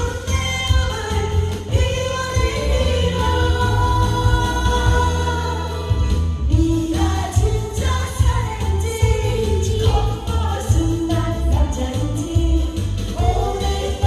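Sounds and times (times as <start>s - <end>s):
person singing: 0.0s - 14.0s.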